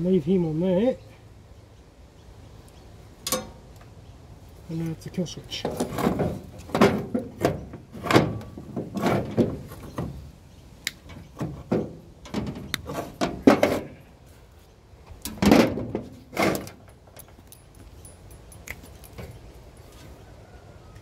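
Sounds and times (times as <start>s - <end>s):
metal parts clunking and rattling: 5.5s - 10.3s, 11.0s - 14.1s, 15.2s - 19.4s.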